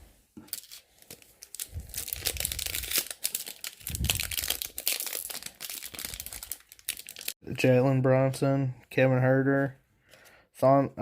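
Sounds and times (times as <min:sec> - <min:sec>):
plastic wrapper crinkling: 0:00.5 - 0:07.4.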